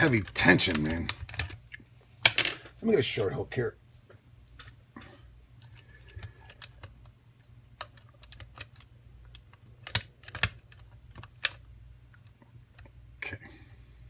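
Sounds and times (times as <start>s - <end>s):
lock picks clicking in a lock: 0.7s - 1.6s, 5.6s - 11.7s.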